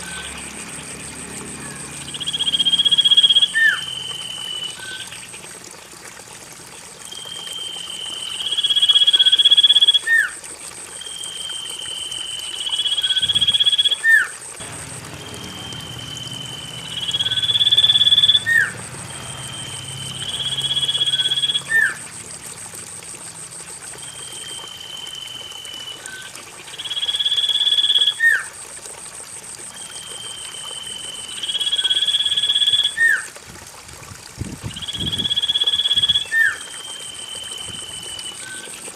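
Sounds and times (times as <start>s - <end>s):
faint trickle of water: 0.0s - 38.9s
bird whistled call: 2.1s - 5.1s, 15.2s - 18.7s, 19.4s - 22.0s, 34.7s - 38.8s.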